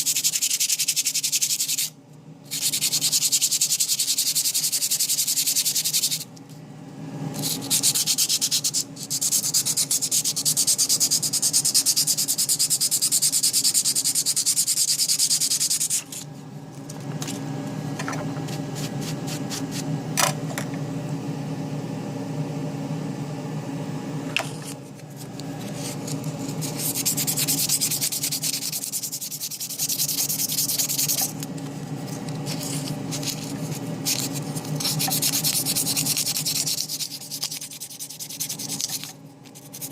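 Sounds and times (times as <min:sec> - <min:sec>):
motor hum: 0:16.1 - 0:37.0.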